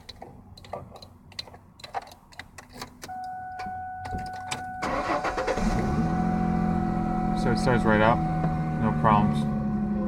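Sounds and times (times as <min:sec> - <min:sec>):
keys clicking and rattling: 0:00.0 - 0:04.6
car engine cranking and starting: 0:04.1 - 0:10.0.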